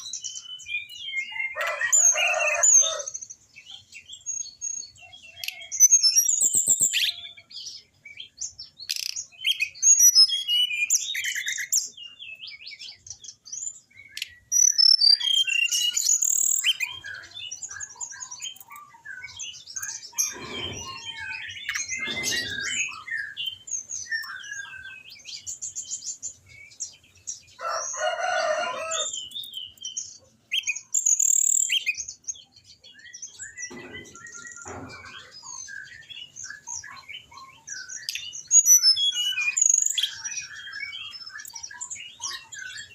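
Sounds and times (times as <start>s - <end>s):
bird chirps trills and whistles: 0.0s - 42.9s
harsh low bird calls: 14.2s - 25.5s.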